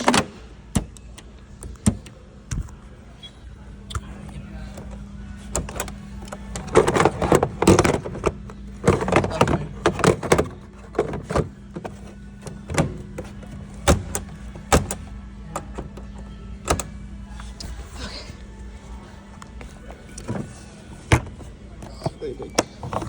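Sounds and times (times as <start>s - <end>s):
plastic parts clicking and clattering: 4.7s - 16.9s, 19.4s - 23.0s.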